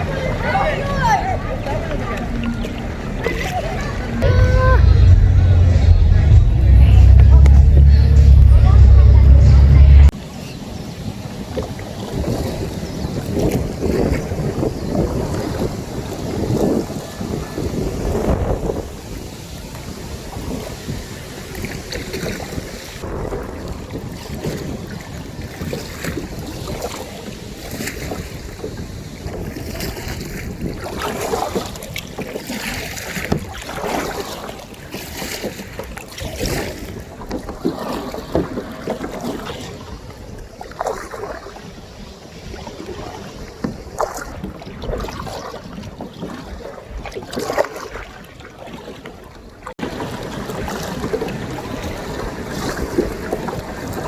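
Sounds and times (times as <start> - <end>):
wind buffeting microphone: 0.0 - 10.1, 10.8 - 31.9
water splashing around kayak: 0.0 - 54.0.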